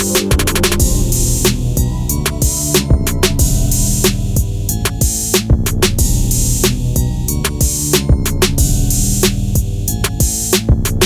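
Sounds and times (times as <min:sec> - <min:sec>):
sustained instrument tones: 0:00.0 - 0:04.8
steady drum beat: 0:00.0 - 0:11.0.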